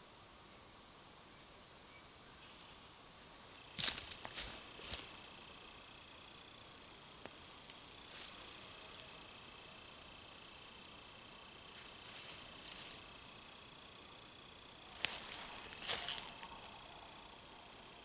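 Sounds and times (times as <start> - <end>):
footsteps crunching on forest floor: 3.2 - 5.7, 7.7 - 9.3, 11.6 - 13.2, 14.8 - 17.1
twigs snapping: 3.8 - 5.5, 14.9 - 16.7.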